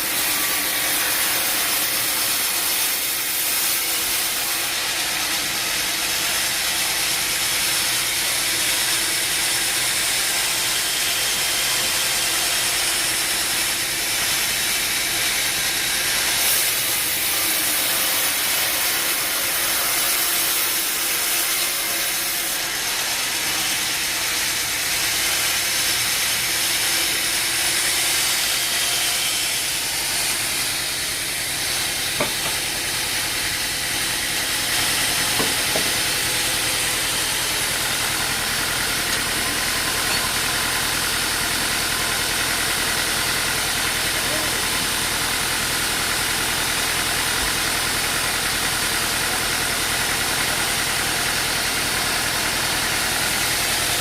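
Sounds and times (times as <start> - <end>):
engine running steadily: 29.4 - 54.0
sharp knocks: 32.2 - 32.6, 35.3 - 36.0.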